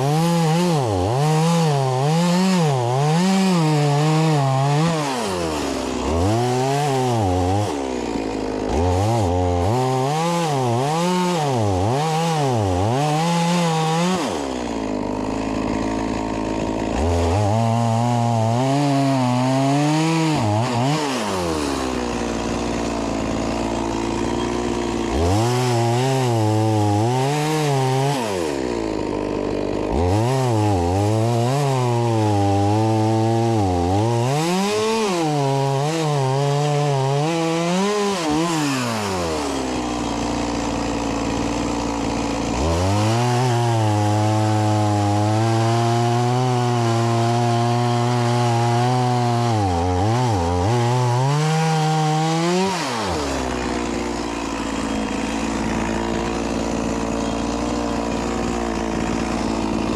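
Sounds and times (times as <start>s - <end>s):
chainsaw cutting logs: 0.0s - 59.9s.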